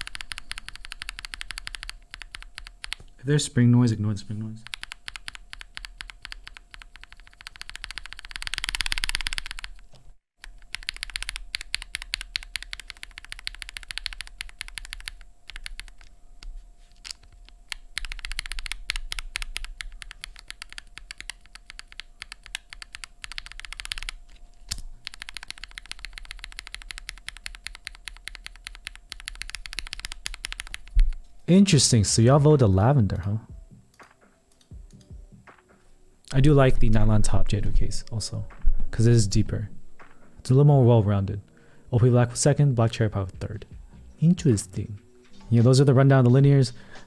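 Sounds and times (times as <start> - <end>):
mechanical keyboard typing: 0.0 - 3.1, 4.6 - 16.1, 17.0 - 31.2.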